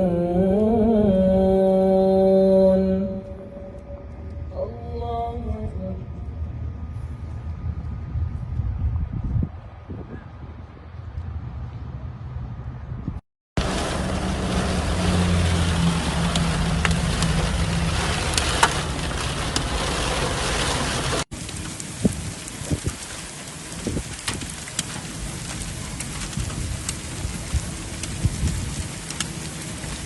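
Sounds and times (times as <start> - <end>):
low hum: 0.0 - 23.5
drops or hail hitting surfaces: 13.6 - 30.0
heavy rain pouring: 13.6 - 30.0.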